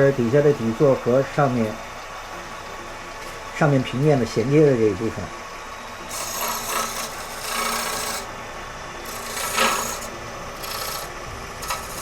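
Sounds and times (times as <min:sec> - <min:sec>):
lathe humming: 0:00.0 - 0:12.0
gouge cutting wood on lathe: 0:06.0 - 0:08.4, 0:09.0 - 0:12.0.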